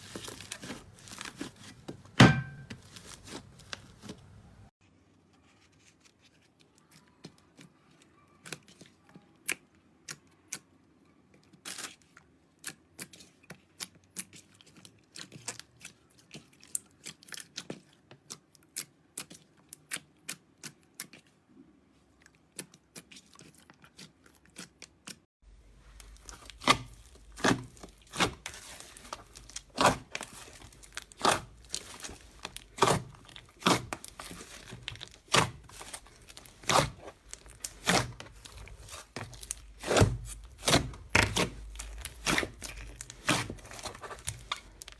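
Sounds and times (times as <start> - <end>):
slime crackling and popping: 25.9 - 44.9.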